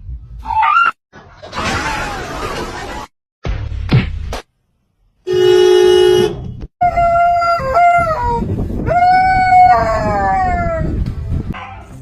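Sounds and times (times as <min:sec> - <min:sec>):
steady horn-like tone: 0:05.3 - 0:06.4.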